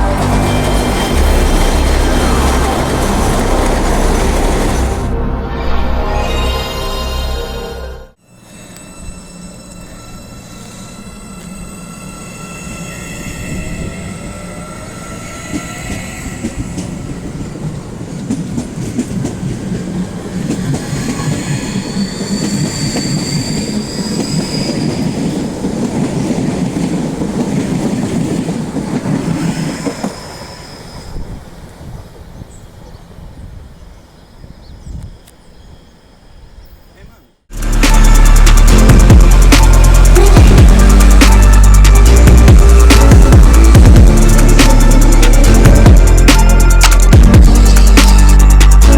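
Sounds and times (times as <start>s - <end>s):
train motor whine: 0.0s - 5.1s
wheels clattering over rail joints: 0.0s - 5.1s
high wheel squeal: 6.0s - 16.8s, 20.7s - 25.5s, 29.4s - 31.6s.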